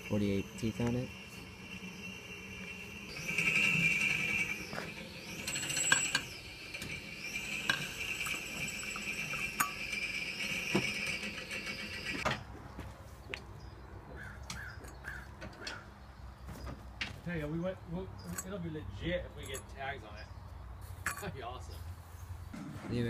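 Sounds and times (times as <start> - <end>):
high insect drone: 0.0 - 12.2
sharp metallic clinks: 19.3 - 19.9.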